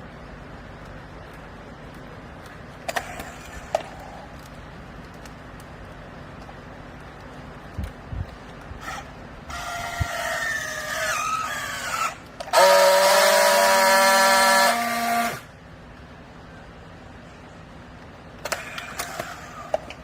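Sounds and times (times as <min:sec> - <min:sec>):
hydraulic baler whining: 0:08.8 - 0:15.6.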